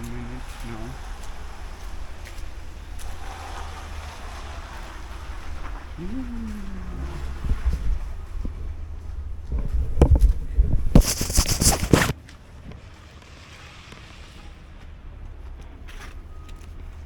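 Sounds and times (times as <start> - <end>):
wind buffeting microphone: 0.0 - 12.1
microphone crackling and rubbing: 0.0 - 12.2
faint outdoor hiss: 0.0 - 15.0.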